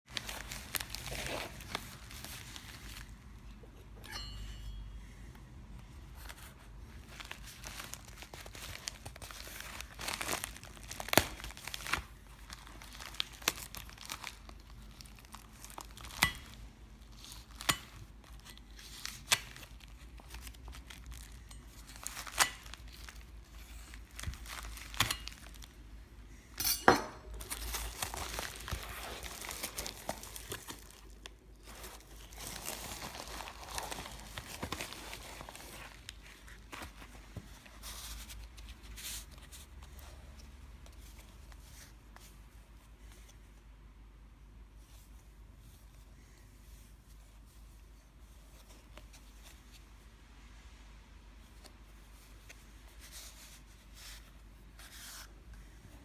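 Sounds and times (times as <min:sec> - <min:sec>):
plastic packaging crinkling: 0:00.1 - 0:03.2, 0:06.2 - 0:26.1, 0:27.3 - 0:39.7.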